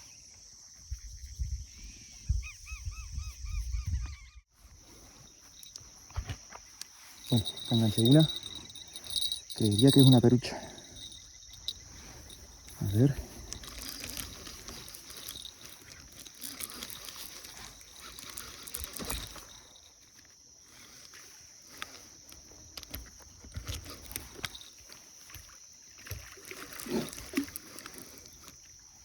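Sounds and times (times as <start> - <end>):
high insect drone: 0.0 - 29.0
water splashing and sloshing: 10.8 - 20.3, 21.0 - 28.6.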